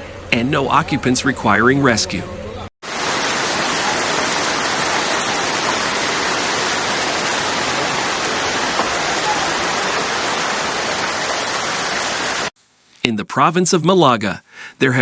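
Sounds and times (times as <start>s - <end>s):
water rushing: 2.8s - 12.5s.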